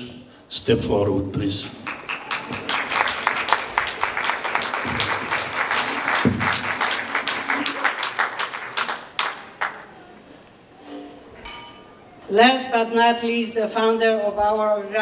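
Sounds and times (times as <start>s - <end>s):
audience applauding: 1.8s - 10.2s.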